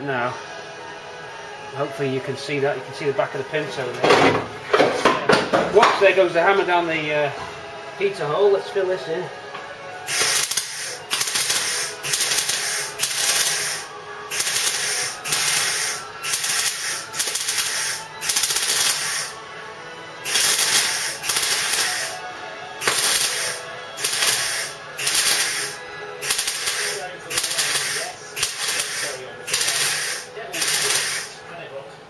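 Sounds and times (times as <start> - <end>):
welder crackling in pulsed bursts: 10.1 - 19.4, 20.2 - 22.2, 22.8 - 31.4.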